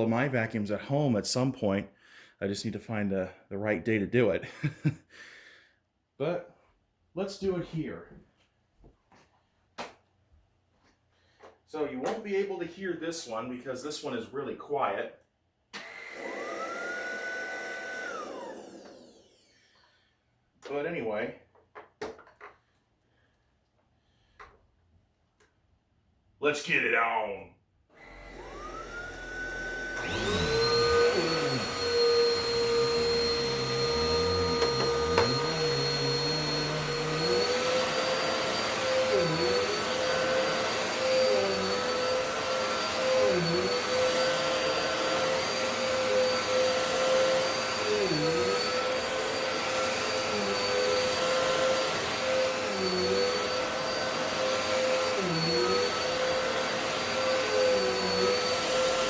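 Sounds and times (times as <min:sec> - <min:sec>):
vacuum cleaner motor whine: 0:15.8 - 0:19.9, 0:27.9 - 0:59.0.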